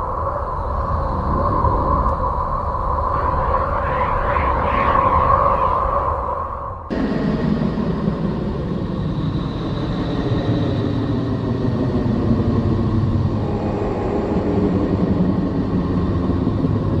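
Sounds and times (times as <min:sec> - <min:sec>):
low rumbling drone: 0:05.4 - 0:17.0.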